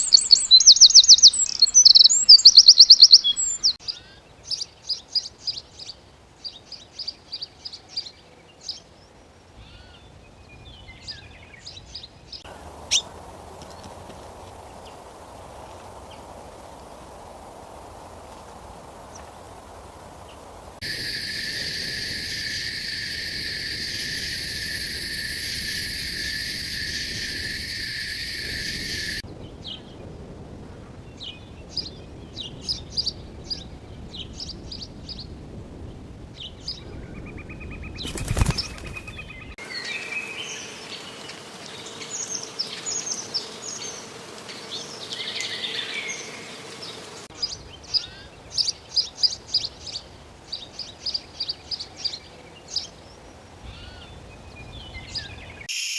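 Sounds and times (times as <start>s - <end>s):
songbirds chirping and singing: 0.0s - 13.9s
steady high drone: 20.8s - 29.2s.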